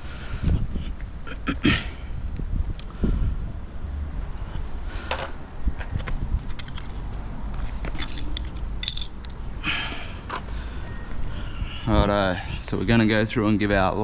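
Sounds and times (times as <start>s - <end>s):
small metallic rattles: 7.6s - 9.4s.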